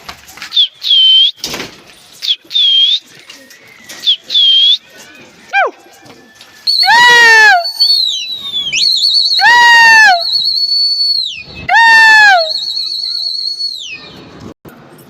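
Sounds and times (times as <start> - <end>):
loud falling whistle calls: 0.5 - 1.4, 2.2 - 4.9, 6.2 - 14.4
long high warbling whistle: 6.6 - 11.7.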